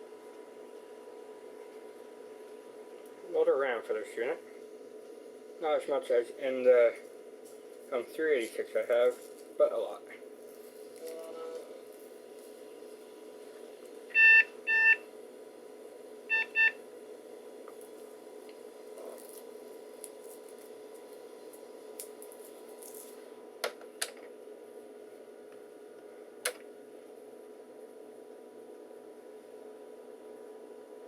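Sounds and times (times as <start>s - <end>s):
steady hum: 0.0s - 31.0s
computer speaker beeping: 14.2s - 15.0s.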